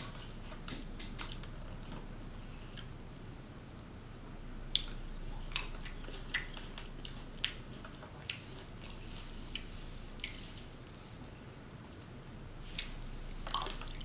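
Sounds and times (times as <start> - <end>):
person chewing: 4.7 - 11.0, 12.7 - 14.0.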